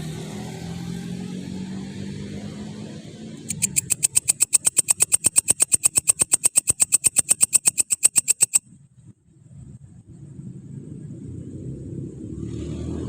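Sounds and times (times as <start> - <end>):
grasshopper clicking: 3.4 - 8.6.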